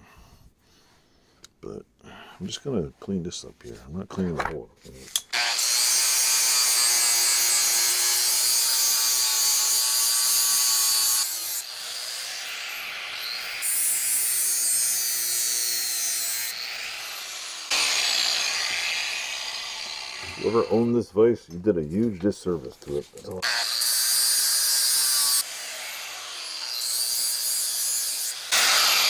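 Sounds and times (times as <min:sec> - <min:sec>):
hand-held grinder grinding metal: 0:05.1 - 0:21.0, 0:23.3 - 0:29.0.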